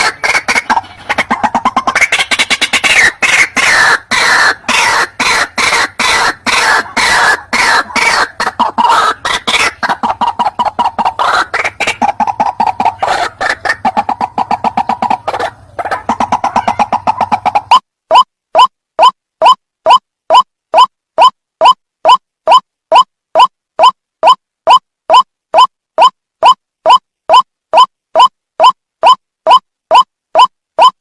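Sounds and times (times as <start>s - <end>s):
waterhen harsh croaking calls: 0.0s - 19.6s.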